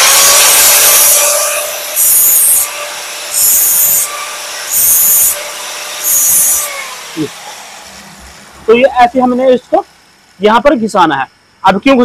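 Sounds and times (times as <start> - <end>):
electric grinder motor hum: 0.0 - 8.7.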